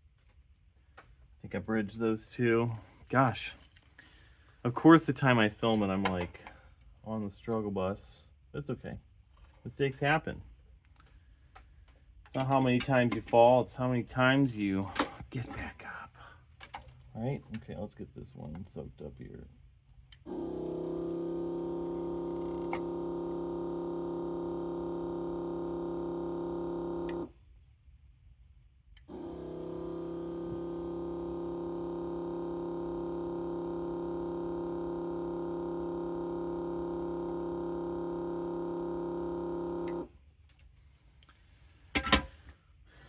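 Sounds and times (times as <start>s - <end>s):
desoldering vacuum pump humming: 20.1s - 27.4s, 29.0s - 40.1s.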